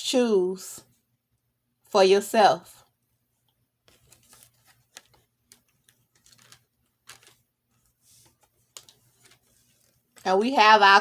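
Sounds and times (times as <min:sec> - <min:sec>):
cards clicking and tapping: 0:03.9 - 0:07.4, 0:08.2 - 0:10.2.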